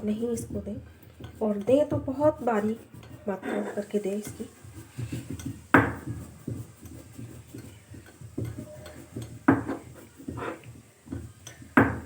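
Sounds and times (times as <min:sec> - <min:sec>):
stone grinder scraping: 0:02.5 - 0:06.2, 0:08.4 - 0:10.7.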